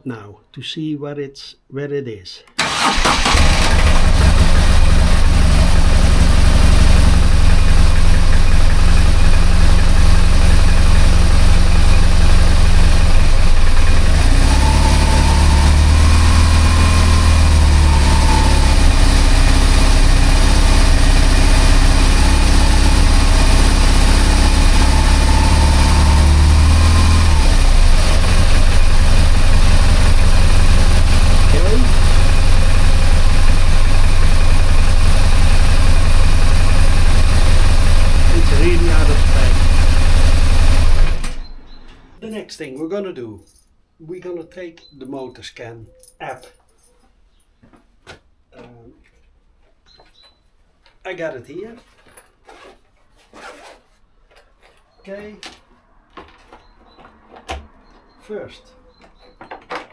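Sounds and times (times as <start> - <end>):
motorcycle engine idling rough: 2.8 - 41.8.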